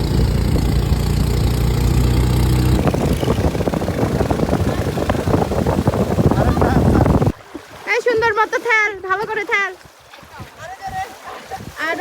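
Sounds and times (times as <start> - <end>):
motor engine idling: 0.0 - 7.3
crackling splashing noise: 2.8 - 8.1.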